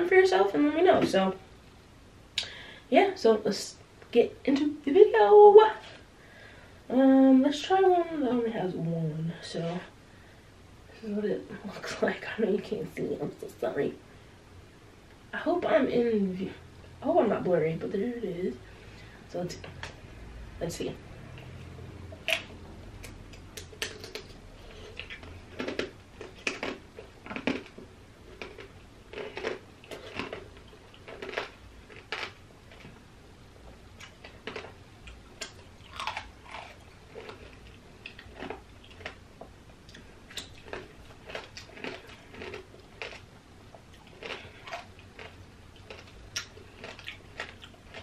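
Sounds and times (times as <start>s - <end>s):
sugar shell crunching: 22.2s - 32.9s, 34.0s - 48.0s
wet chewing smacks: 43.8s - 48.0s.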